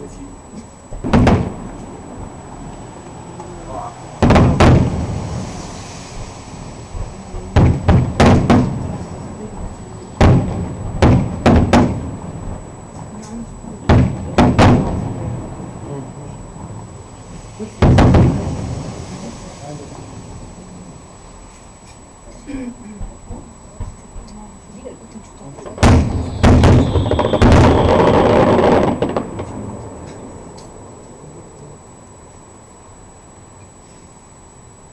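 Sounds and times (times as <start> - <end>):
firework shells bursting: 0.9 - 3.2, 4.2 - 13.1, 17.3 - 19.2, 25.6 - 31.1.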